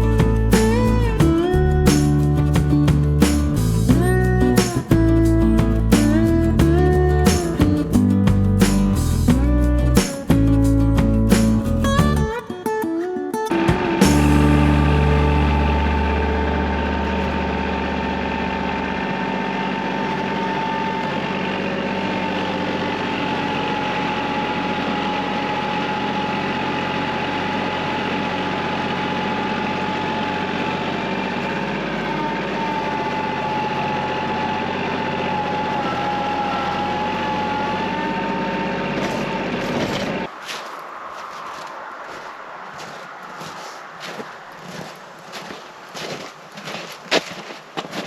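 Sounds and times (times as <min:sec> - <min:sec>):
tractor diesel engine running: 0:00.0 - 0:12.4, 0:13.5 - 0:48.0
high whine: 0:13.5 - 0:45.6.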